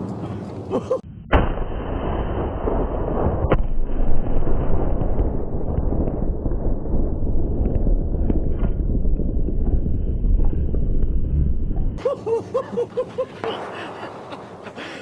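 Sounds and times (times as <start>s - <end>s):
explosion rumble: 1.0s - 12.0s.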